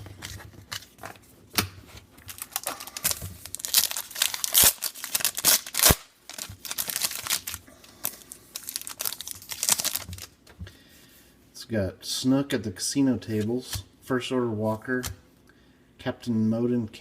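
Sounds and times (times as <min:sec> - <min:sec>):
wrapper snapping: 0:02.3 - 0:10.3
wrapper tearing and crinkling: 0:02.3 - 0:10.3.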